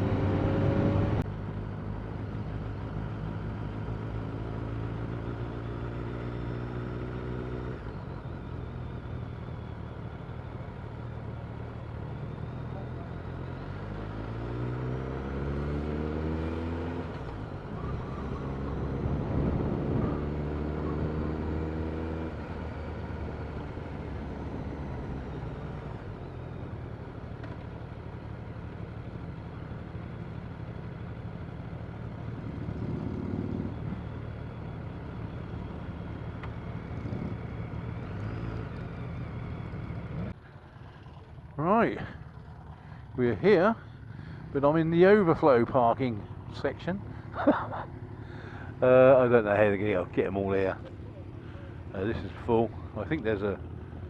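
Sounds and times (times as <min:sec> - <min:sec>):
motorcycle engine revving: 0:11.6 - 0:27.9, 0:29.0 - 0:54.0
wind rushing over microphone: 0:19.0 - 0:20.3.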